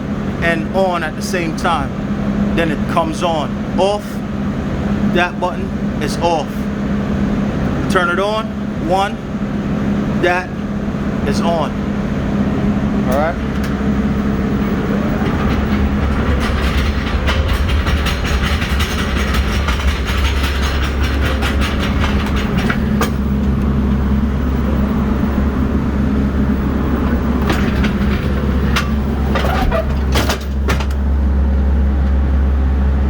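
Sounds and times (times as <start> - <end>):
engine idling: 0.0 - 33.0
sharp knocks: 15.2 - 23.7
rattling clicks: 15.2 - 24.1, 27.4 - 32.2.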